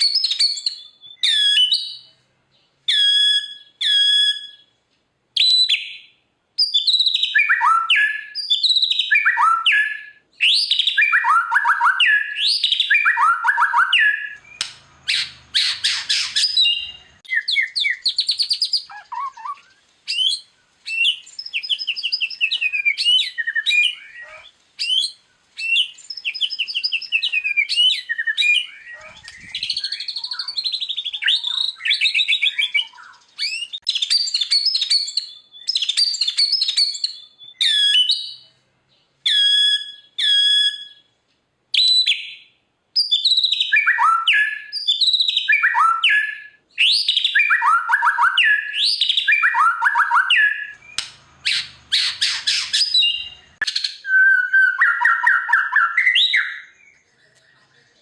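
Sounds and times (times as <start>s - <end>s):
songbird whistles and trills: 0.0s - 4.8s, 5.4s - 38.6s, 39.2s - 57.7s.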